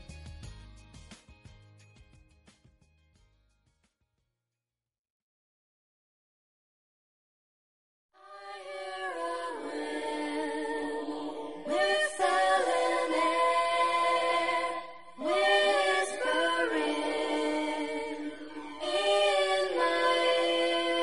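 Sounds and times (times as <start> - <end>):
wordless choir-like vocal harmonies: 8.2 - 21.0.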